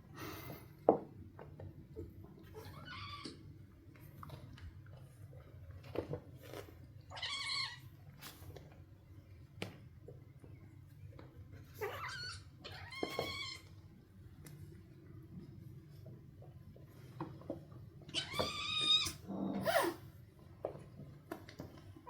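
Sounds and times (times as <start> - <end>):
kittens scuffling: 1.4 - 22.0.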